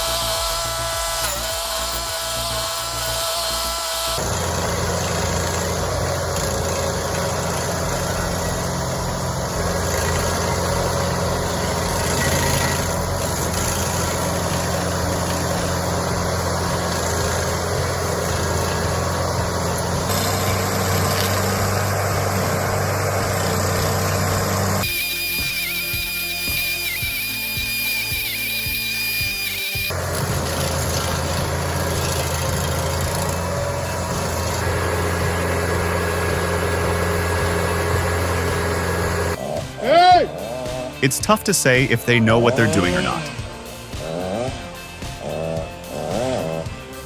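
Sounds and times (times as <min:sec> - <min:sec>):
stump grinder engine: 0:00.0 - 0:39.8
cutter wheel grinding wood: 0:00.0 - 0:41.4, 0:42.0 - 0:46.9.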